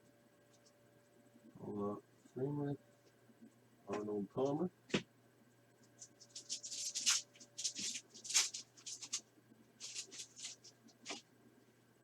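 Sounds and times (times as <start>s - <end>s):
cards swishing as flipped: 6.0s - 9.2s, 9.8s - 11.2s.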